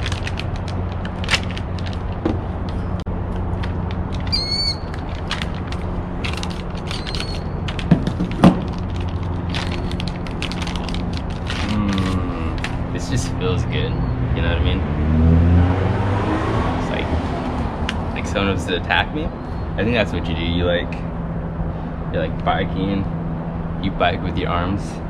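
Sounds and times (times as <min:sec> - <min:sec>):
bike parts and packaging handled: 0:00.0 - 0:13.3
short squeak: 0:04.3 - 0:04.9, 0:06.8 - 0:07.7
steady low hum: 0:16.7 - 0:25.0.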